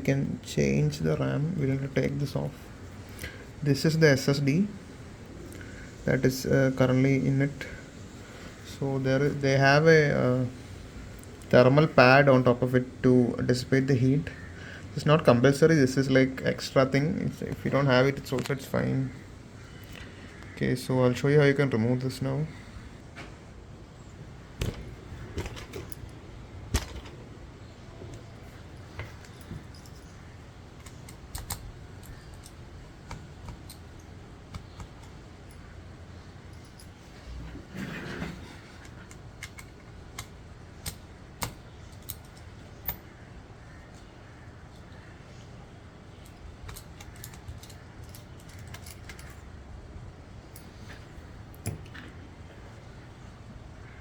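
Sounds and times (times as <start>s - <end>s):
low steady hum: 0.0s - 54.0s
laptop parts being handled: 24.5s - 35.9s, 46.1s - 49.5s.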